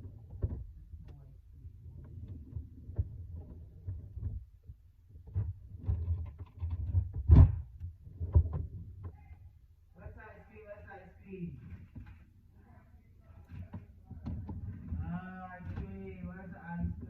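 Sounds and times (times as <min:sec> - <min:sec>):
knocks and bumps of handling: 0:00.0 - 0:01.2, 0:01.9 - 0:09.3, 0:13.4 - 0:16.2.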